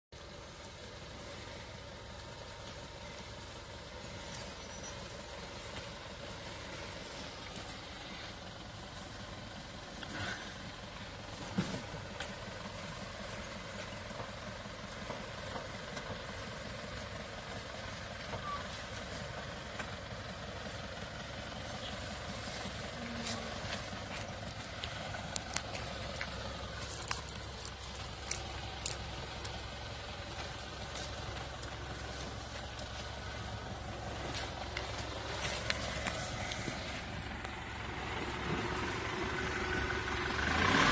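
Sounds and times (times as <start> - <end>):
car engine running: 0.1 - 40.9.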